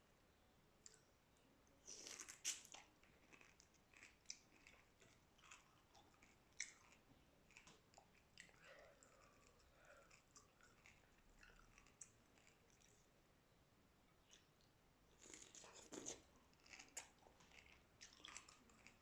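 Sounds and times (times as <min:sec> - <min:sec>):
chewing shrimp crunches: 0:01.8 - 0:13.0, 0:15.2 - 0:19.0.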